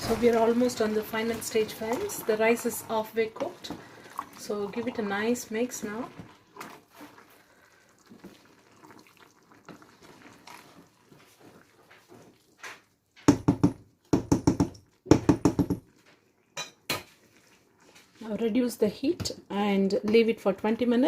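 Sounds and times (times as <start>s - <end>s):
spoon knocking against pot: 13.2s - 15.8s.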